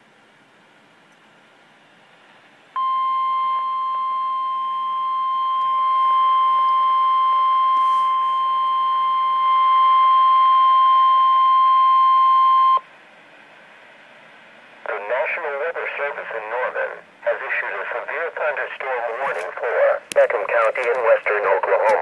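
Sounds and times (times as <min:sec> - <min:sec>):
steady high alarm tone: 0:02.8 - 0:12.8
faint radio hiss: 0:12.8 - 0:22.0.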